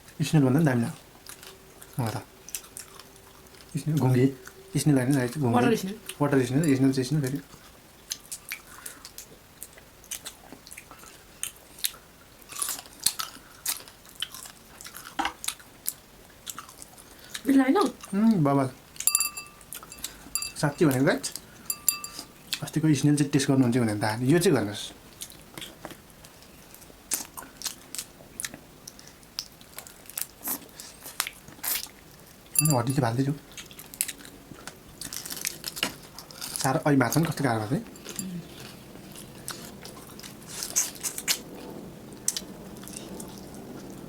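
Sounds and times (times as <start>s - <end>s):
chewing crunchy food: 0.9s - 5.4s, 7.4s - 18.1s, 25.1s - 32.6s, 33.4s - 44.0s.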